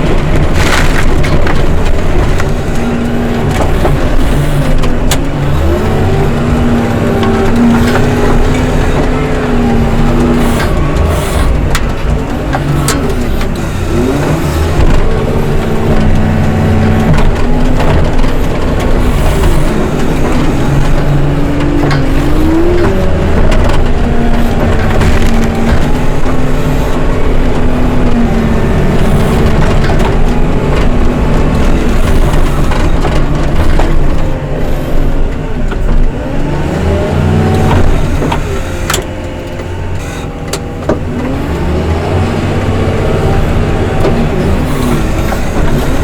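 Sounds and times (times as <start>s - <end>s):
heavy machinery diesel engine running: 0.0s - 46.0s.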